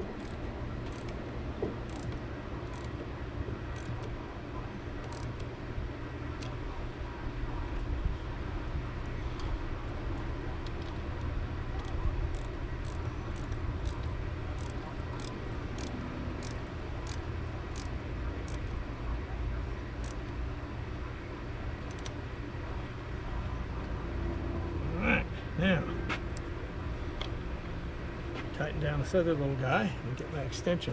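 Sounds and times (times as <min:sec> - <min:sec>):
metallic clicks of hand tools: 0:00.2 - 0:01.2, 0:01.9 - 0:02.9.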